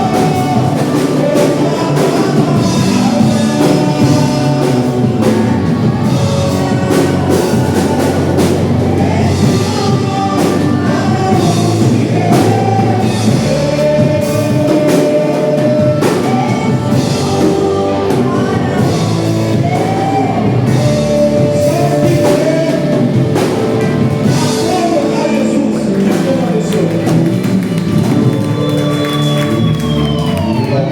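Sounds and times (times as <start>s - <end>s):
live band with singer: 0.0s - 30.9s.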